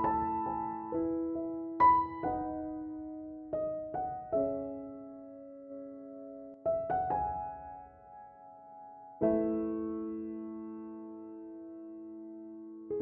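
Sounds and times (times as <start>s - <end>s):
soft piano chords: 0.0s - 13.0s.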